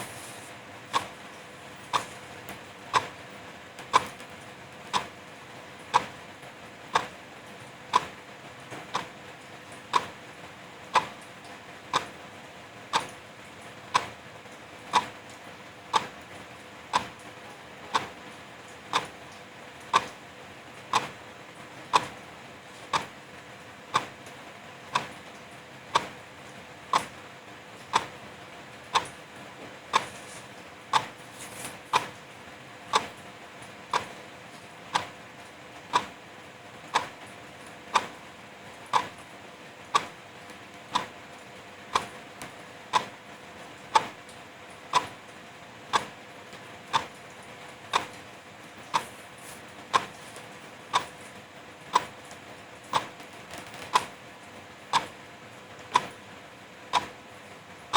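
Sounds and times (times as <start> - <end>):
wall clock ticking: 0.9 - 1.2, 1.9 - 2.1, 2.9 - 3.2, 3.9 - 4.2, 4.9 - 5.1, 5.9 - 6.2, 6.9 - 7.1, 7.9 - 8.2, 8.9 - 9.1, 9.9 - 10.2, 10.9 - 11.2, 11.9 - 12.1, 12.9 - 13.1, 13.9 - 14.2, 14.9 - 15.2, 15.9 - 16.2, 16.9 - 17.2, 17.9 - 18.2, 18.9 - 19.2, 19.9 - 20.2, 20.9 - 21.2, 21.9 - 22.2, 22.9 - 23.2, 23.9 - 24.2, 24.9 - 25.2, 25.9 - 26.2, 26.9 - 27.1, 27.9 - 28.2, 28.9 - 29.2, 29.9 - 30.1, 30.9 - 31.2, 31.9 - 32.2, 32.9 - 33.2, 33.9 - 34.2, 34.9 - 35.2, 35.9 - 36.2, 36.9 - 37.2, 37.9 - 38.2, 38.9 - 39.3, 39.9 - 40.2, 40.9 - 41.2, 41.9 - 43.2, 43.9 - 44.2, 44.9 - 45.2, 45.9 - 46.2, 46.9 - 48.2, 48.9 - 54.2, 54.9 - 55.2, 55.9 - 56.2, 56.8 - 57.2.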